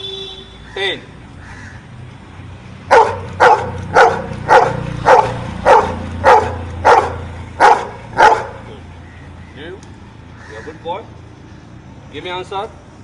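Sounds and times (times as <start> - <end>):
dog barking: 2.9 - 8.7.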